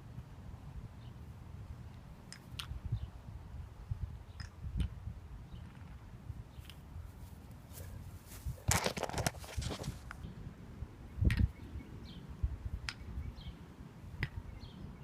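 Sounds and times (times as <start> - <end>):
birds chirping faintly: 9.4 - 15.0.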